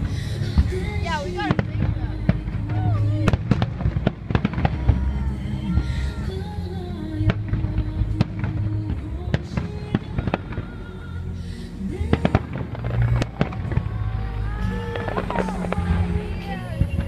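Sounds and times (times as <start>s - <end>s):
music with held melody: 0.0s - 17.0s
fireworks bangs and pops: 1.5s - 5.1s.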